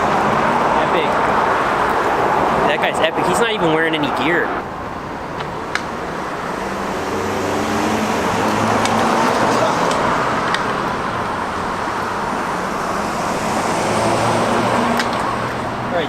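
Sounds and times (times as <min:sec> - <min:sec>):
cars passing: 0:00.0 - 0:16.0
roadway rumble: 0:00.0 - 0:16.0.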